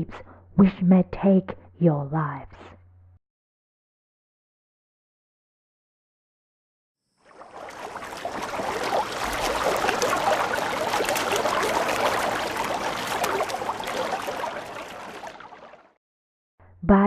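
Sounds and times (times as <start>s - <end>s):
water splashing and trickling: 7.2s - 16.0s.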